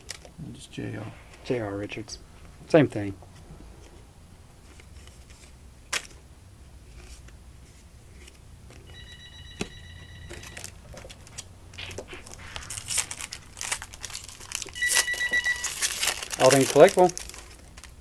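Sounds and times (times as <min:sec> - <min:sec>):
telephone ringing: 0:08.9 - 0:10.8, 0:14.8 - 0:15.9
wrappers crinkling and tearing: 0:10.5 - 0:18.0.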